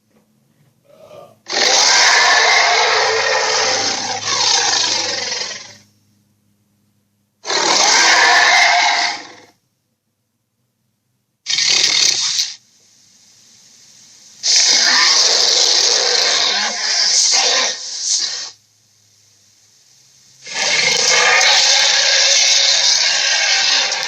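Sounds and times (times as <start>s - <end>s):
faint rising hiss: 0.0s - 9.8s, 11.9s - 24.0s
harsh rasping dinosaur roars: 0.9s - 5.8s, 7.4s - 9.6s, 14.4s - 18.5s, 20.4s - 24.0s.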